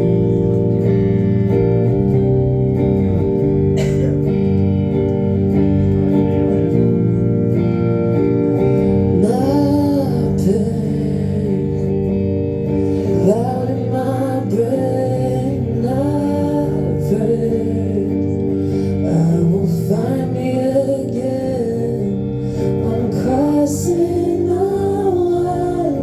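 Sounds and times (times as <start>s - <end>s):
acoustic guitar chords: 0.0s - 26.0s
person singing: 8.5s - 26.0s.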